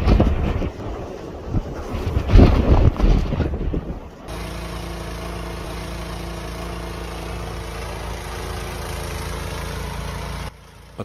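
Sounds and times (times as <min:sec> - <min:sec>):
wind buffeting microphone: 0:00.0 - 0:04.3
engine running steadily: 0:00.0 - 0:11.0.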